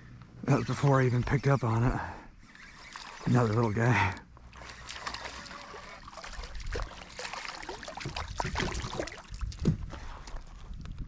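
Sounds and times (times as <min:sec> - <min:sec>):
water splashing and dripping: 0:04.5 - 0:10.4
clicks and knocks in kayak: 0:08.0 - 0:11.0.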